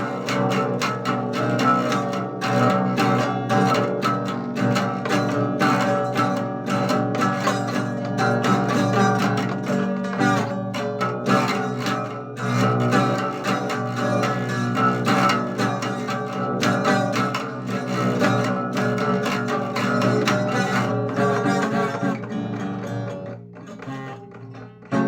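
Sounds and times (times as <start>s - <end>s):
guitar plucked and strummed: 0.0s - 25.0s.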